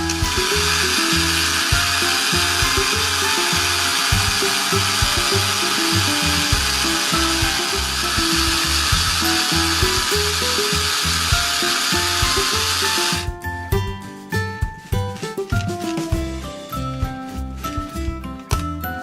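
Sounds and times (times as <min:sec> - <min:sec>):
small toy motor whirring: 0:00.0 - 0:13.3
background music: 0:00.0 - 0:19.0.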